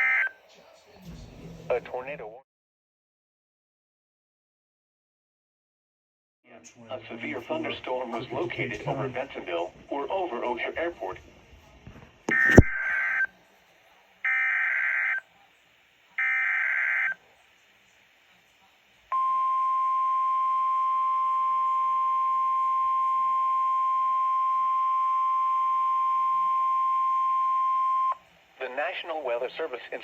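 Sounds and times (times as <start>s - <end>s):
steady warning alarm tone: 0.0s - 0.4s, 12.3s - 13.3s, 14.3s - 15.2s, 16.2s - 17.2s, 19.1s - 28.2s
sharp click: 12.3s - 12.8s
data tone bursts: 12.3s - 13.3s, 19.1s - 28.2s.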